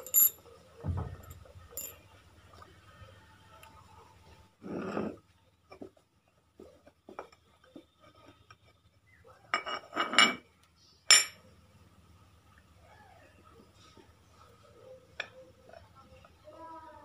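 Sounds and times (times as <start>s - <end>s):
metal tools clinking: 0.0s - 0.4s, 1.0s - 2.0s
sharp ringing metal clink: 0.0s - 0.4s, 1.2s - 2.0s
metallic clanks: 0.0s - 2.0s.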